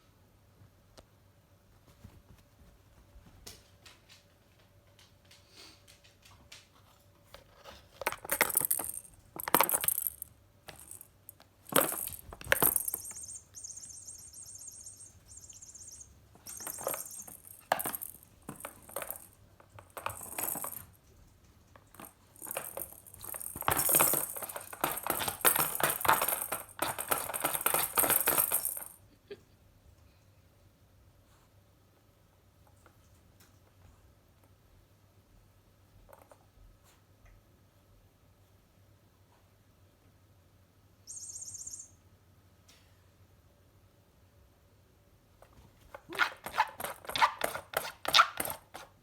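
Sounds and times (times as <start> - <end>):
cat toy clattering: 8.0 - 13.8.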